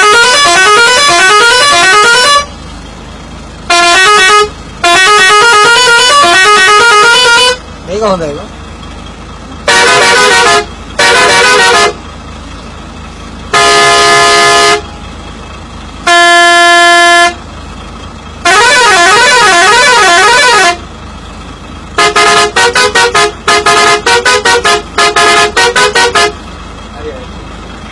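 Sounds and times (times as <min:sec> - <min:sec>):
multi-tone musical bus horn: 0:00.0 - 0:02.6, 0:03.6 - 0:07.7, 0:09.6 - 0:12.1, 0:13.5 - 0:15.0, 0:16.0 - 0:17.5, 0:18.4 - 0:21.0, 0:21.9 - 0:26.5.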